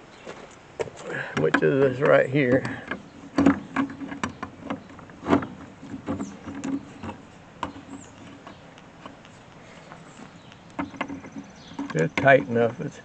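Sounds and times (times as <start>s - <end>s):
metal clicks and knocks: 1.3s - 9.3s, 10.7s - 12.9s.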